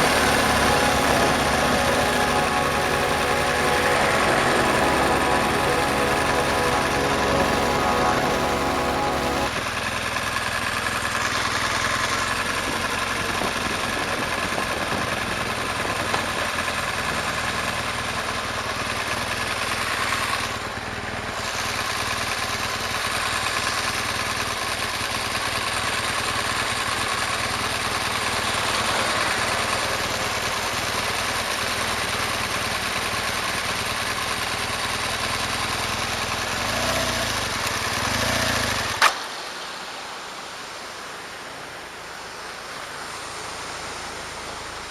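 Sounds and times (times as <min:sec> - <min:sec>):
rushing noise: 0:00.0 - 0:09.6, 0:28.1 - 0:31.7.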